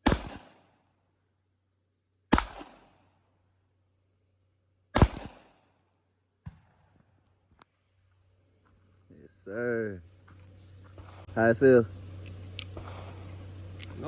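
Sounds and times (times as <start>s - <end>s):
handgun shots with echo: 0.0s - 0.7s, 2.3s - 3.1s, 5.0s - 5.8s.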